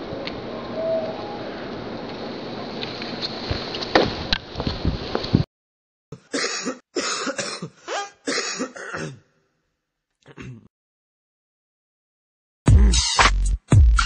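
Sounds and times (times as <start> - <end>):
person coughing and clearing throat: 6.2 - 9.3, 10.2 - 10.7.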